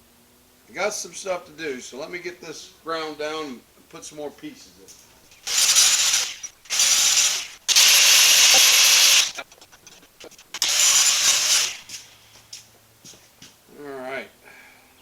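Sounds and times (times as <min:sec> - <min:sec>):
grinder grinding steel tubing: 0:05.3 - 0:12.4.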